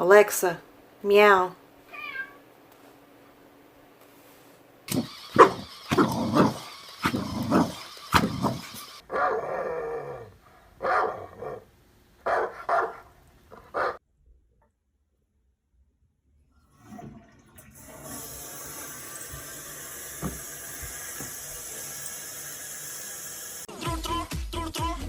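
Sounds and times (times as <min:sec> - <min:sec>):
dog barking and growling: 0:04.9 - 0:14.0.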